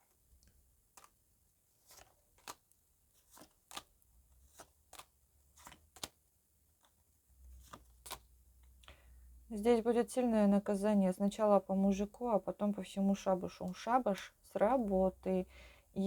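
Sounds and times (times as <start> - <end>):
cards clicking and tapping: 0.4 - 1.2, 1.9 - 6.2.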